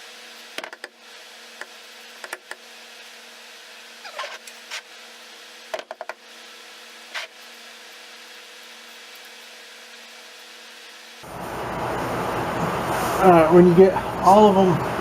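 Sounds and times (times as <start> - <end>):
hand tools clicking and tapping: 0.6 - 0.9, 1.6 - 2.6.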